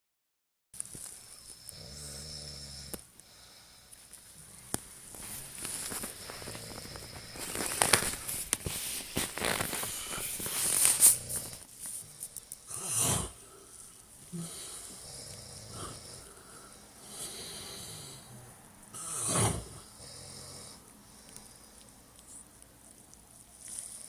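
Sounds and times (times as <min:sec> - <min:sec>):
man snoring: 0:01.7 - 0:03.0, 0:05.4 - 0:08.3, 0:09.2 - 0:13.7, 0:14.3 - 0:20.9.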